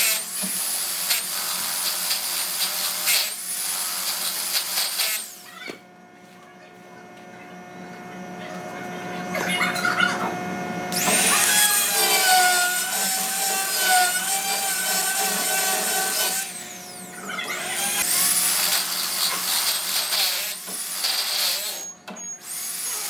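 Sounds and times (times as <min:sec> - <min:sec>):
power drill boring through steel: 0:00.0 - 0:05.5, 0:10.9 - 0:23.0
drill bit squealing: 0:03.0 - 0:05.5, 0:10.9 - 0:23.0.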